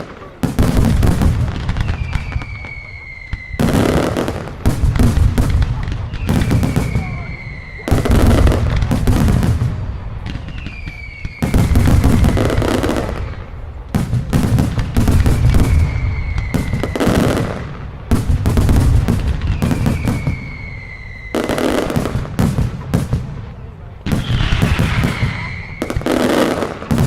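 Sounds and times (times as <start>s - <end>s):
fireworks bangs and crackle: 0.0s - 27.0s
high gliding whistle: 1.8s - 3.7s, 6.1s - 8.1s, 10.5s - 12.6s, 19.5s - 21.6s.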